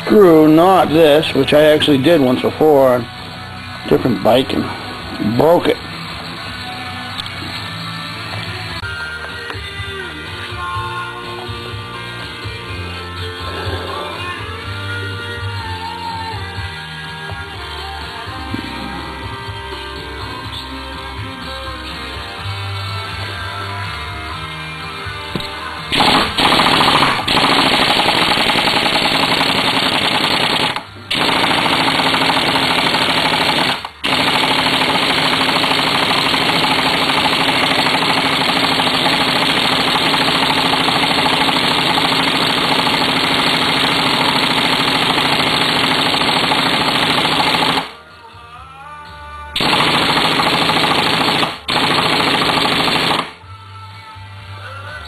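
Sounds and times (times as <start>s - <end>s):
air impact wrench hammering: 25.4s - 47.9s.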